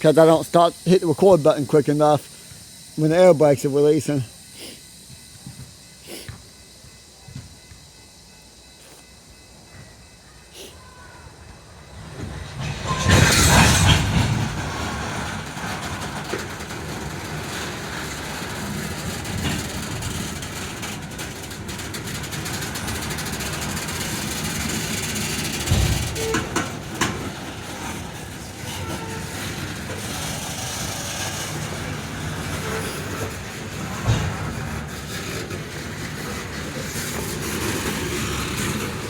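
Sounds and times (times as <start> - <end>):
train wheels clacking over rail joints: 11.8 - 39.0.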